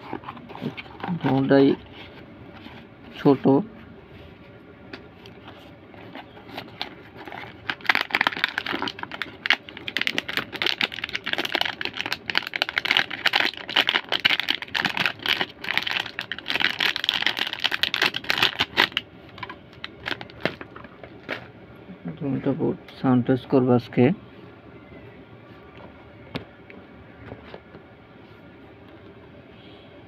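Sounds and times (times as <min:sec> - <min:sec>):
crinkling rustles: 0:05.1 - 0:21.5.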